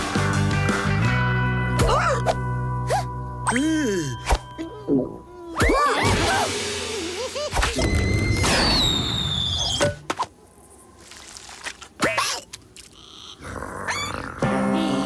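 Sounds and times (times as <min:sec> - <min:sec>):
background music: 0:00.0 - 0:08.1
falling whistle: 0:07.8 - 0:10.0.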